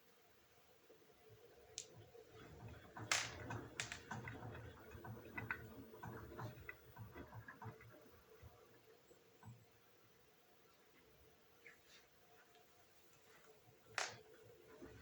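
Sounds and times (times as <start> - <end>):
washing machine clicks and knocks: 2.4 - 7.9.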